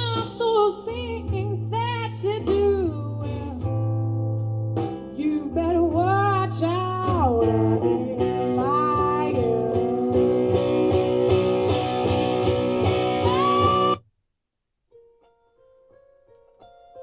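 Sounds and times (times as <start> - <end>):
guitar music with sliding melody: 0.0 - 14.0.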